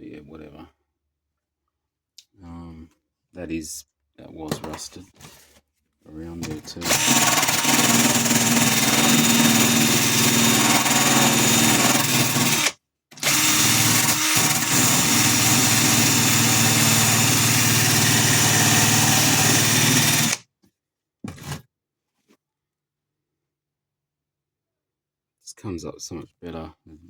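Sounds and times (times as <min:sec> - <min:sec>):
handheld power tool running: 0:06.8 - 0:20.4.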